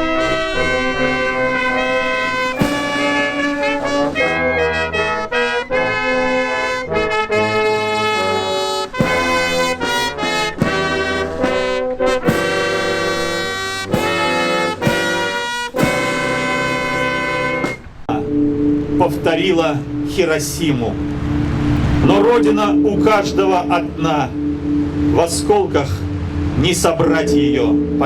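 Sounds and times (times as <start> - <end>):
brass chords: 0.0 - 28.0.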